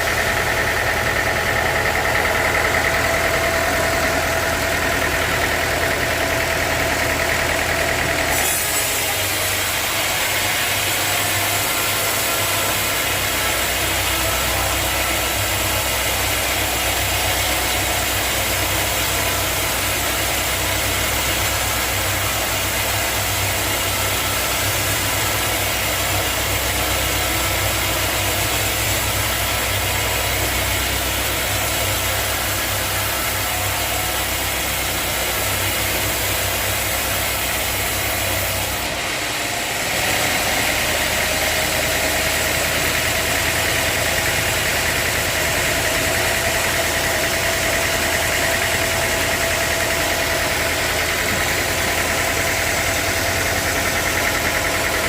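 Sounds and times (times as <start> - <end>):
high saw whine: 0.0 - 55.0
sawmill machinery humming: 0.0 - 55.0.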